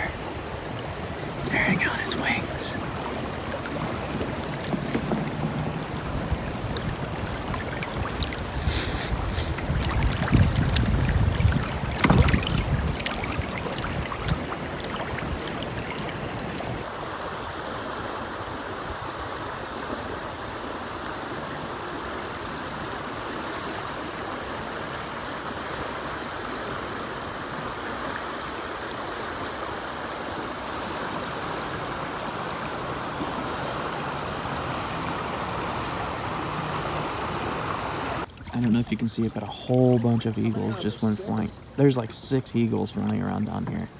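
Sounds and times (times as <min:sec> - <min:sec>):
wind on microphone: 0:00.0 - 0:16.8
creek water running: 0:00.0 - 0:43.9.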